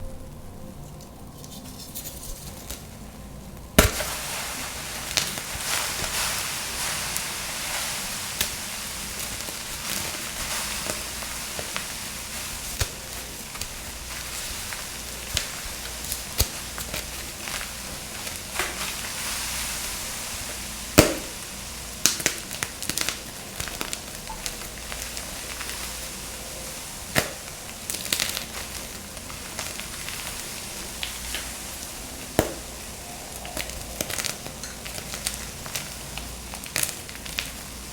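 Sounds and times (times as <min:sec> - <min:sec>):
chalk crunching and crackling: 0:00.8 - 0:03.1, 0:03.8 - 0:21.5
chalk snapping: 0:12.5 - 0:19.0.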